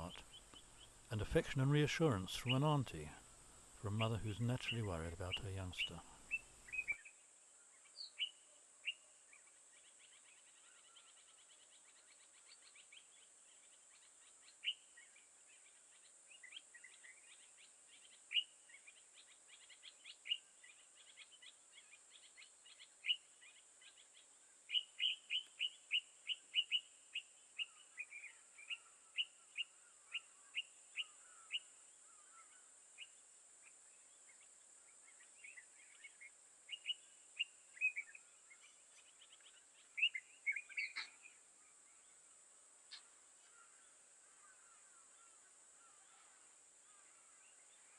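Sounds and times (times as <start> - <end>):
birds chirping: 0.0 - 3.2, 3.8 - 7.1, 34.0 - 47.9
steady high-pitched hiss: 0.0 - 47.9.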